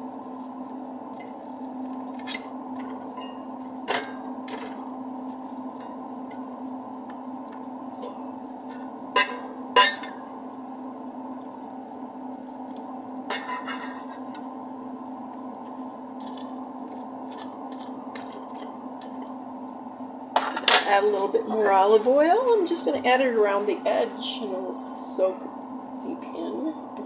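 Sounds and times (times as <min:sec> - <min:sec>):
steady low hum: 0:00.0 - 0:27.0
utensils clinking against cookware: 0:08.8 - 0:10.2, 0:13.3 - 0:14.4.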